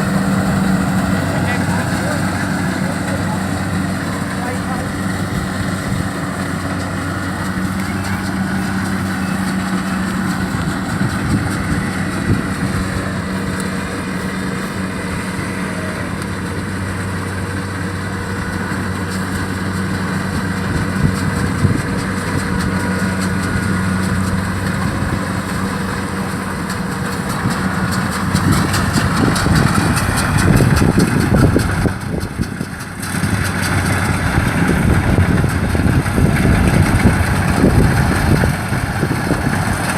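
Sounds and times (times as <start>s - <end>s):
combine harvester engine hum: 0.0s - 39.9s.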